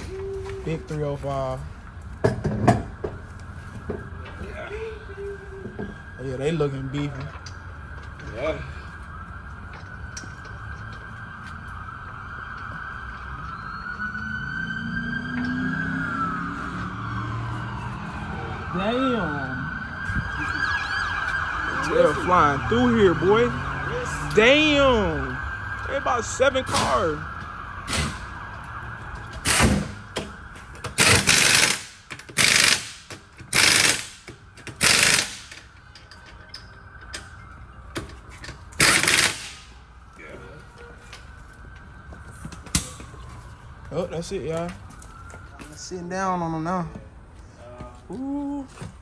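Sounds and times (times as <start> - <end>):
emergency vehicle siren: 0.0 - 49.0
pneumatic impact wrench bursts: 31.0 - 35.6, 38.8 - 39.7.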